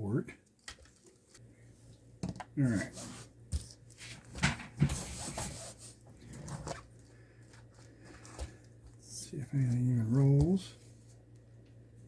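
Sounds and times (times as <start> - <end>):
low electrical hum: 0.0 - 12.0
plastic parts knocking and clicking: 2.2 - 2.5.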